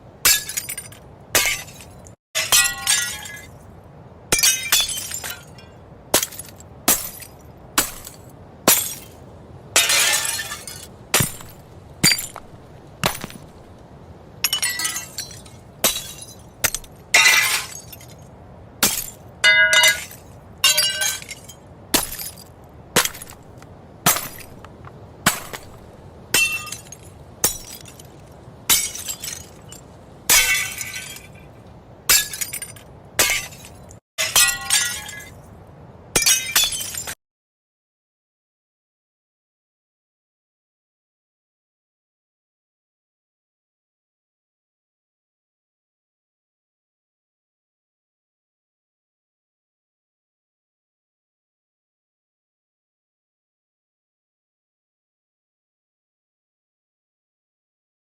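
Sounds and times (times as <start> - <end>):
glass shattering: 0.2 - 3.6, 4.3 - 5.6, 6.2 - 9.2, 9.8 - 13.5, 14.4 - 24.6, 25.2 - 31.4, 32.1 - 35.4, 36.2 - 37.2.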